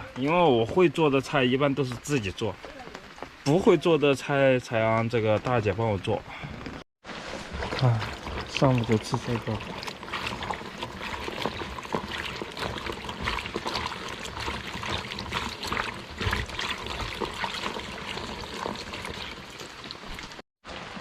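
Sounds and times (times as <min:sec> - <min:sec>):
water pouring and trickling: 0:00.0 - 0:21.0
small water splashes: 0:07.1 - 0:21.0.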